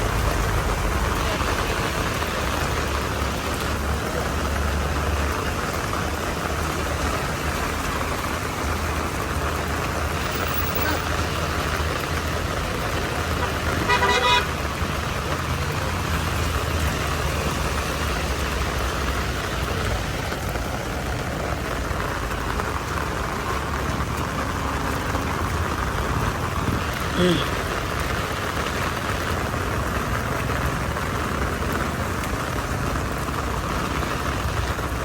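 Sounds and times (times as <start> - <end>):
heavy rain: 0.0 - 35.0
traffic rumble: 0.0 - 35.0
vehicle horn honk: 13.8 - 14.5.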